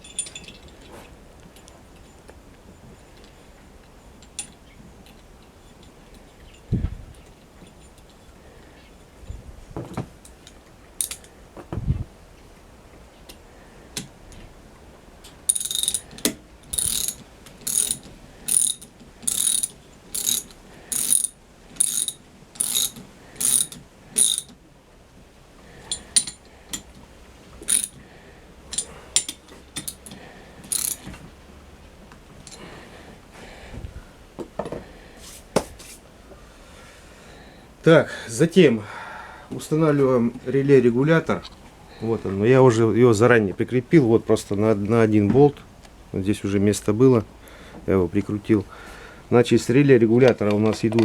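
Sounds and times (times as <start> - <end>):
ratchet wrench strokes: 11.0 - 11.3, 15.5 - 24.5, 27.6 - 28.0, 28.7 - 31.1.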